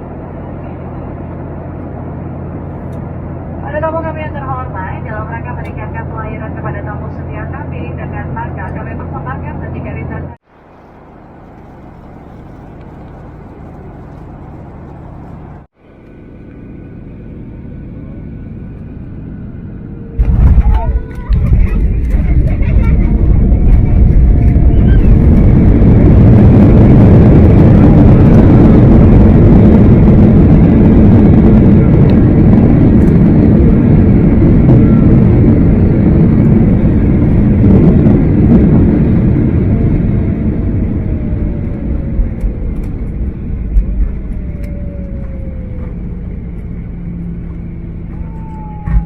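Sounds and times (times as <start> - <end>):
vehicle rumble and rush: 0.0 - 49.0
faint falling whines: 10.8 - 49.0.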